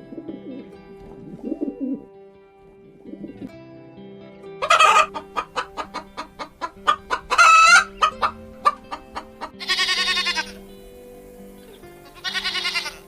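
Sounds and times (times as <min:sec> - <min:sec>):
soft background music: 0:00.0 - 0:13.0
chicken clucking: 0:04.6 - 0:10.6
chicken squawking: 0:04.6 - 0:10.6, 0:12.0 - 0:13.0.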